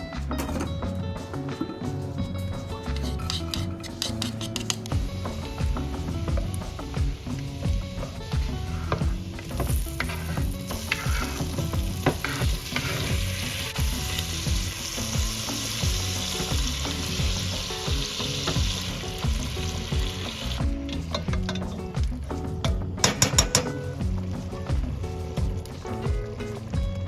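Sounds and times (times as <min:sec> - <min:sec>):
food sizzling in a pan: 0:05.1 - 0:21.3.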